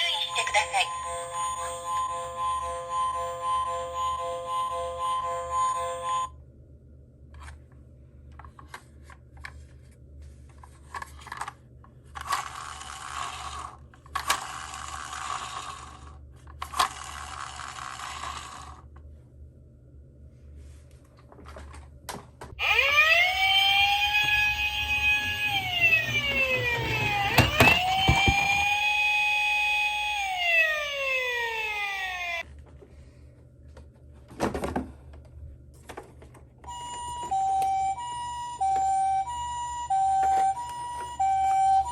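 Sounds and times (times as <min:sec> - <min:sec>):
emergency vehicle sirens wailing: 0:22.6 - 0:32.4.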